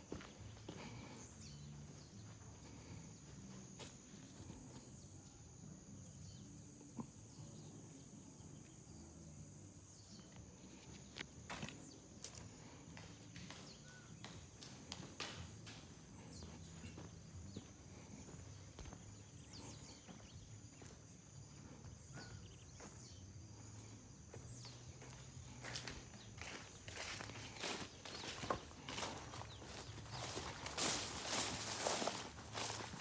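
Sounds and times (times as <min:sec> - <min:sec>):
footsteps through dry undergrowth: 0:10.8 - 0:33.0.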